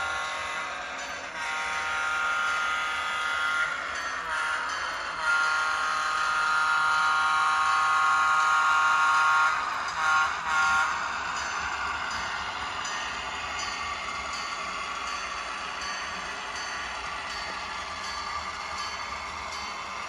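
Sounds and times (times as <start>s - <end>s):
model locomotive chime horn: 0.0s - 11.6s.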